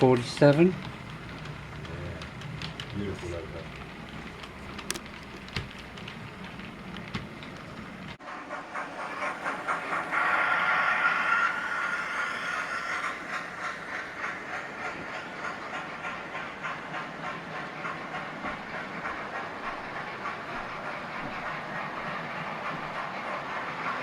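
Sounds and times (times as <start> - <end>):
train wheels clicking on rail joints: 0.0 - 24.0
hiss of wheels and motor: 0.4 - 24.0.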